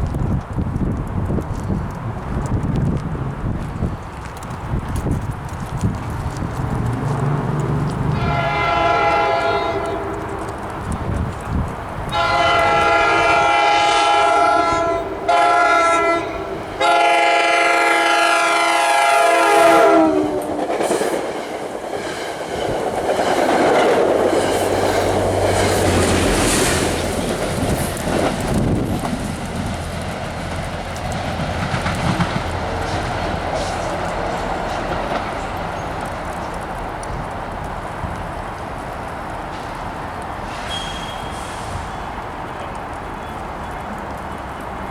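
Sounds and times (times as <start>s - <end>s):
train wheels rumbling on rails: 0.0s - 44.9s
locomotive engine humming: 1.7s - 44.9s
train horn blasts: 7.8s - 10.7s, 12.1s - 20.6s.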